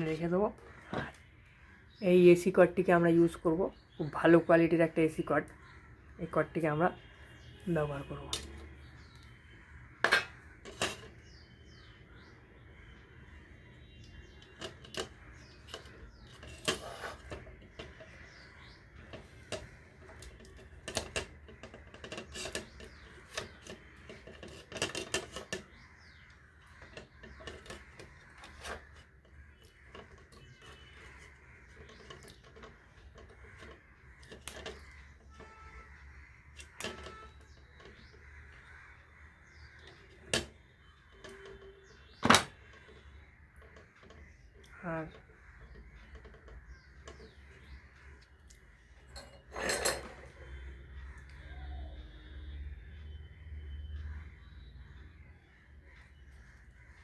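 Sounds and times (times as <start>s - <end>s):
small parts clicking and knocking: 18.9s - 25.8s, 26.6s - 35.9s, 36.5s - 38.6s.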